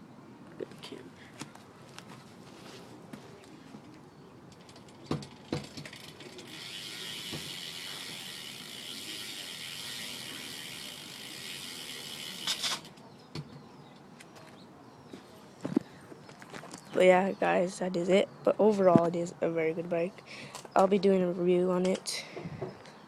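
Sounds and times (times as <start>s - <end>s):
bicycle hub ratcheting: 4.5s - 13.0s.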